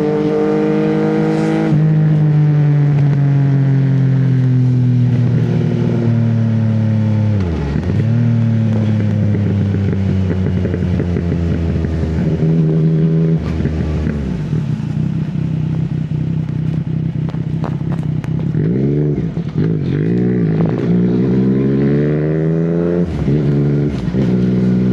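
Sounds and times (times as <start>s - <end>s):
motorcycle engine running: 0.0s - 24.9s.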